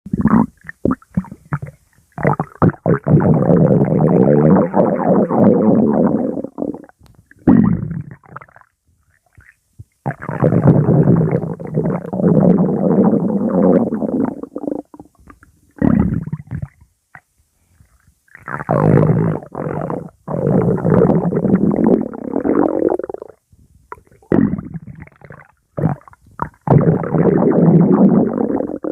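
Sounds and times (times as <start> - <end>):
stomach growling: 0.1 - 28.9.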